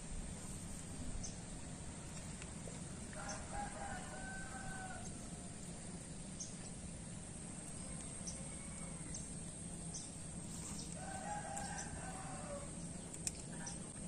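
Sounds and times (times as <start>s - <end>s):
low outdoor background noise: 0.0s - 14.0s
rooster crowing: 3.2s - 5.5s, 7.8s - 9.3s, 10.9s - 12.8s.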